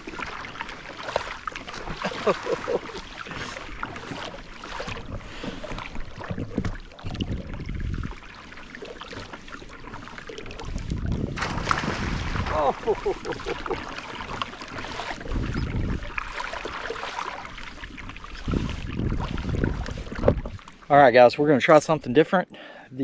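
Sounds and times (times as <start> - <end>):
water splashing against boat hull: 0.0 - 22.1
wind buffeting microphone: 6.2 - 8.2, 10.6 - 13.0, 15.2 - 16.2, 18.1 - 20.6.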